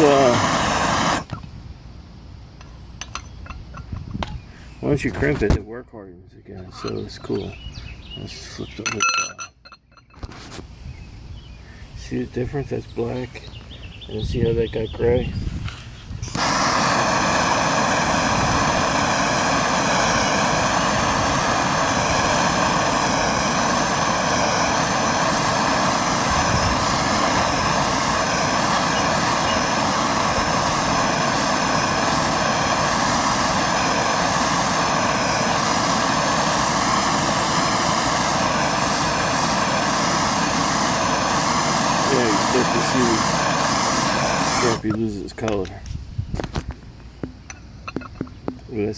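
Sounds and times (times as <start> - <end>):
gas torch burning: 0.0 - 1.5, 2.5 - 5.6, 6.6 - 9.4, 14.1 - 48.9.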